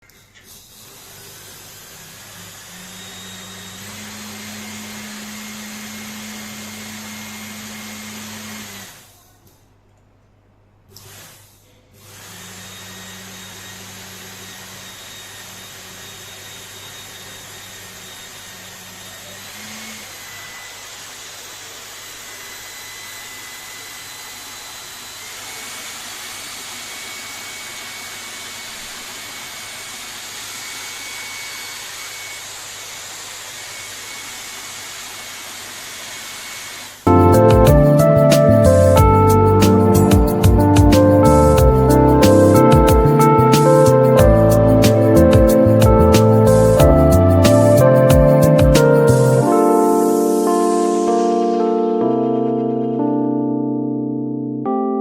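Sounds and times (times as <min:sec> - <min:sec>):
small electric motor whirring: 0:00.5 - 0:09.0, 0:12.0 - 0:37.1.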